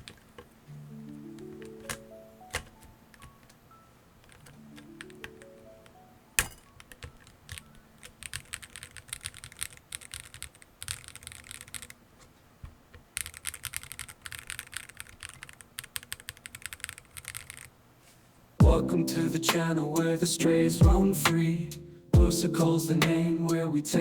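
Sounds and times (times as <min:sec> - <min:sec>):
mechanical keyboard typing: 0:00.0 - 0:03.6, 0:04.2 - 0:12.0, 0:13.0 - 0:17.7.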